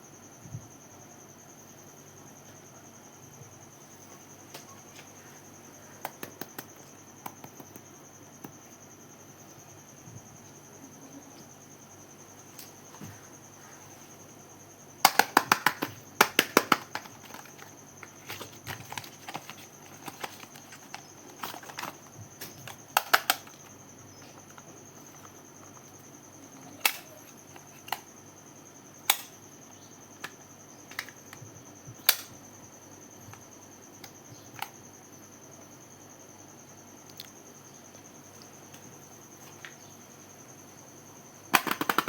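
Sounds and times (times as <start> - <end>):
taps and clicks on makeup packaging: 6.0 - 8.6, 15.0 - 23.7, 30.2 - 31.4, 41.5 - 42.0.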